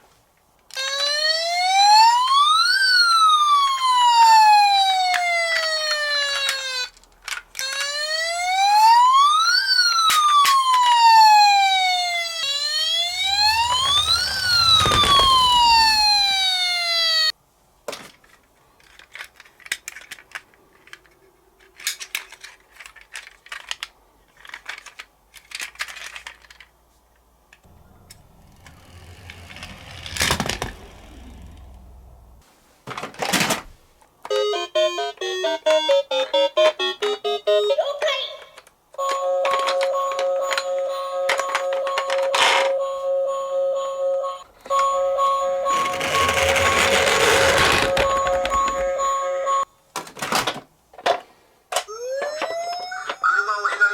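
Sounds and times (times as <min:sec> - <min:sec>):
toy siren wailing: 0:00.7 - 0:06.9, 0:07.6 - 0:17.3, 0:39.0 - 0:49.7, 0:51.9 - 0:53.9.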